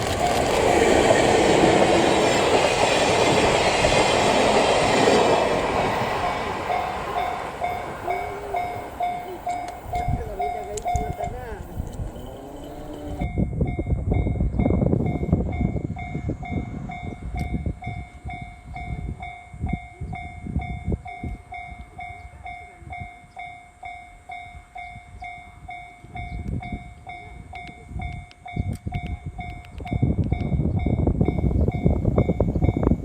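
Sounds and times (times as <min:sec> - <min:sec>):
level crossing bell dinging: 0:06.2 - 0:13.4.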